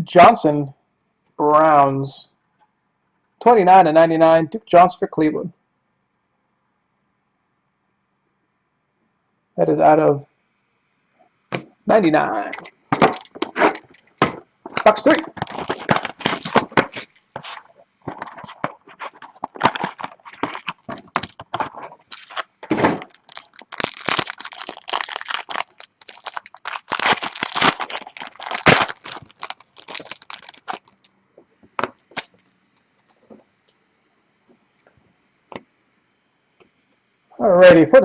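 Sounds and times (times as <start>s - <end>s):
wrappers and cardboard tearing: 12.9s - 31.0s.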